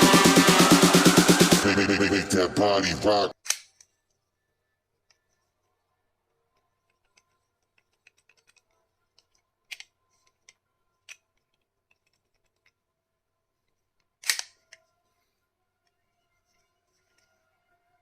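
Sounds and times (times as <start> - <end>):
toy pistol plastic clicks: 3.4 - 3.9, 14.0 - 14.8.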